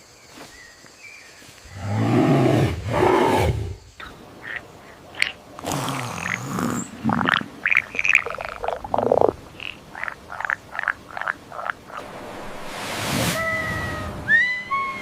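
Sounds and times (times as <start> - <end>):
frog croaking: 4.0 - 12.0.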